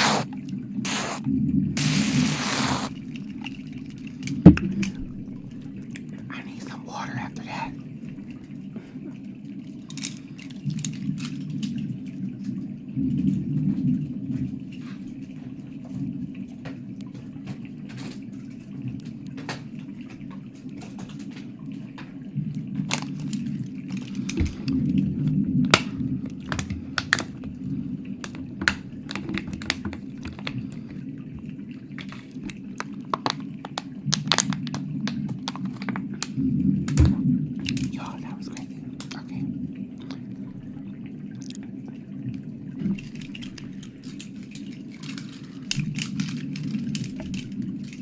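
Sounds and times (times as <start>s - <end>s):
wet mouth clicks: 0.0s - 0.3s, 0.9s - 1.2s, 1.8s - 2.9s, 41.4s - 41.7s.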